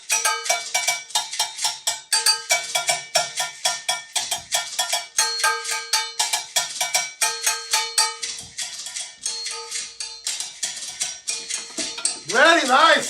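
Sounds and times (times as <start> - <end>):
agogo bells struck rhythmically: 0.0 - 13.0.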